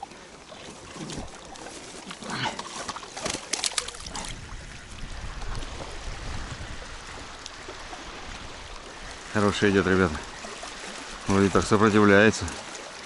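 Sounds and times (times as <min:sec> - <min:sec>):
lapping water: 0:00.0 - 0:13.0
wind rumbling on microphone: 0:03.8 - 0:11.8.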